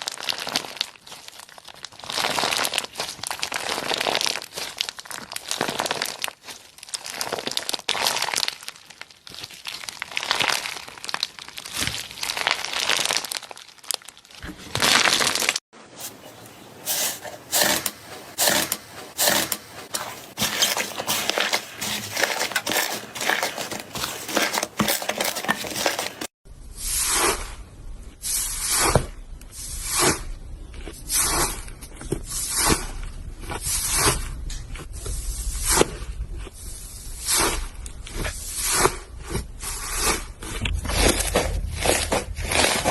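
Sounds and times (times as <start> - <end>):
slime squishing and crackling: 0.0 - 16.5, 17.1 - 26.3, 35.6 - 42.9
slime squelching: 0.1 - 26.4, 37.2 - 42.9.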